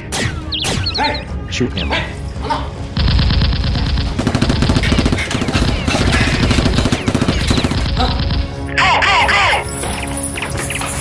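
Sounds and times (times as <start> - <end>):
rapid automatic gunfire: 3.0 - 8.4.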